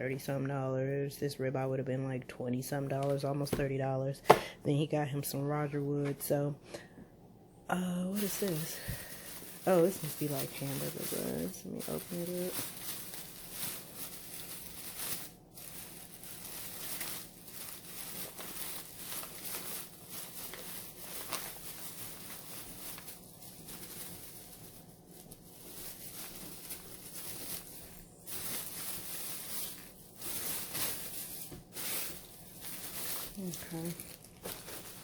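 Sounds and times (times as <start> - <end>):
plastic packaging crinkling: 7.9 - 35.0.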